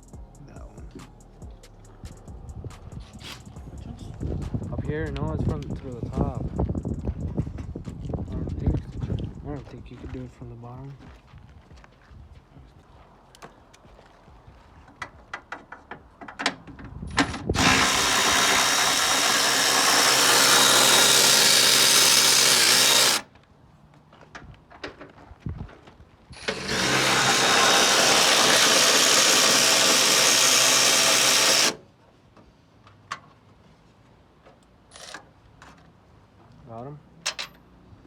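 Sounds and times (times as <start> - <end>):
power drill running: 17.5 - 23.2, 26.4 - 31.8.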